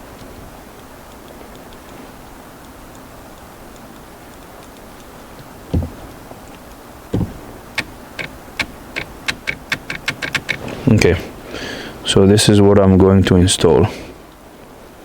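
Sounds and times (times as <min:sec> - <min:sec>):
faint regular ticking: 0:00.0 - 0:11.2
faint steady hiss: 0:00.0 - 0:15.0
sharp clicks: 0:02.6 - 0:10.6
dull knocks: 0:05.4 - 0:06.4, 0:07.1 - 0:10.6.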